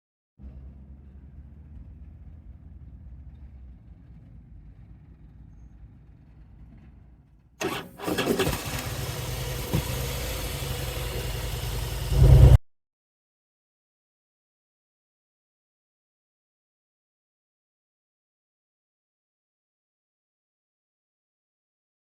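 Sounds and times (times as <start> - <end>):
faint low hum: 0.4 - 7.5
motorcycle engine starting and idling: 7.6 - 12.6.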